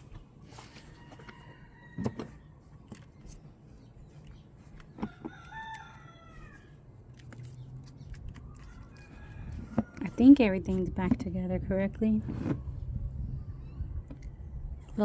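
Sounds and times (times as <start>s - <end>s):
rooster crowing: 0.8s - 2.4s, 5.0s - 6.8s, 8.6s - 10.2s.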